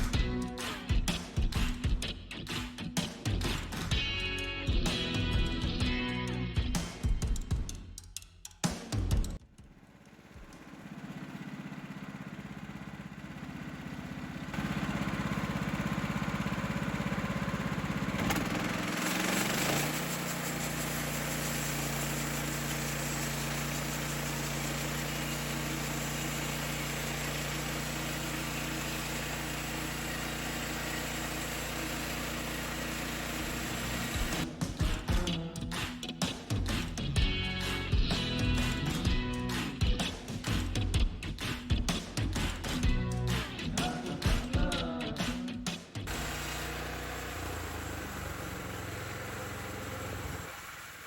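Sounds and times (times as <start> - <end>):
sawmill engine running: 9.7 - 34.6, 36.7 - 40.0, 46.1 - 51.0.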